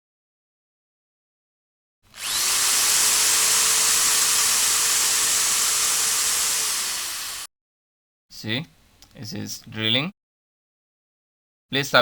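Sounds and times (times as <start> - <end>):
electric drill boring into wood: 2.1 - 7.5.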